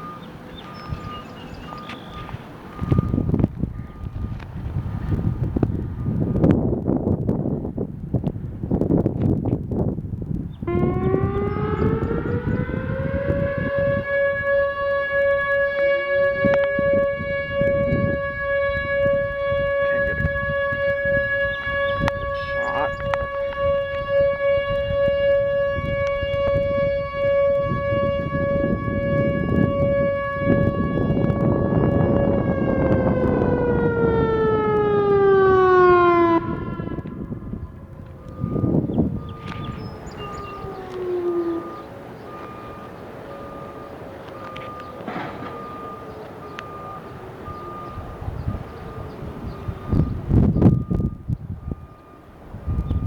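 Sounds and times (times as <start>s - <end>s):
outdoor warning siren steady tone: 0.0s - 7.8s, 8.8s - 53.0s.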